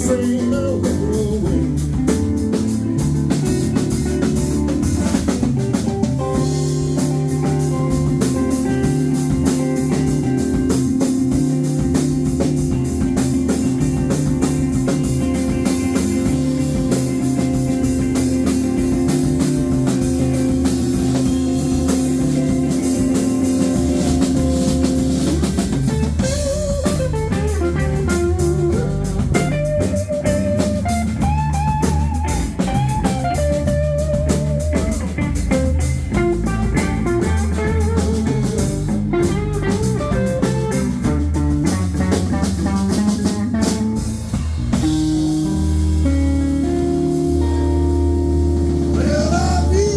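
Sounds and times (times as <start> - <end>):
bass guitar: 0.0 - 49.9
drum kit: 0.0 - 49.9
held guitar chords: 0.0 - 49.9
lead guitar solo: 0.0 - 49.9.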